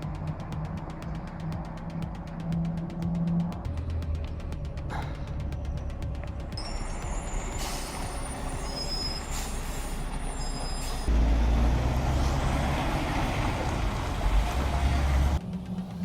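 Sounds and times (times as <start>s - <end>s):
truck engine rumble: 0.0s - 16.0s
brake squeals: 6.6s - 16.0s
air brake hisses: 7.3s - 11.1s.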